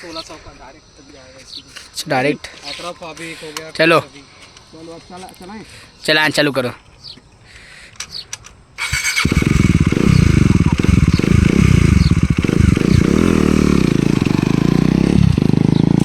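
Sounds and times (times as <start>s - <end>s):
motorcycle engine cranking: 8.1s - 16.0s
loud motorcycle engine revving: 8.8s - 16.0s.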